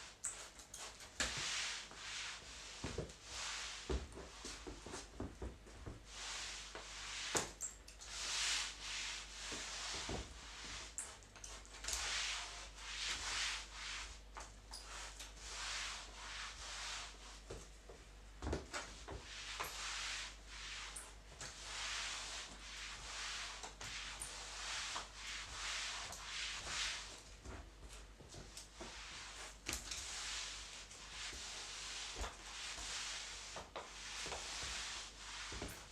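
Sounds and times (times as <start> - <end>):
mop swishing on hard floor: 0.0 - 35.9.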